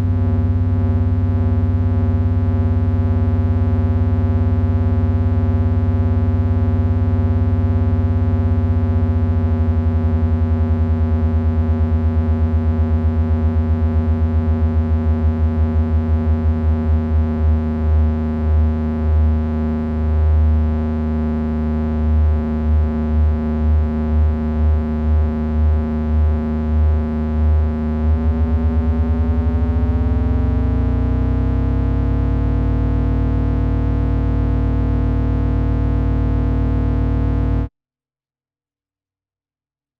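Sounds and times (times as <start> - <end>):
distorted electronic drone: 20.9 - 37.7
throbbing beating tones: 27.5 - 37.7.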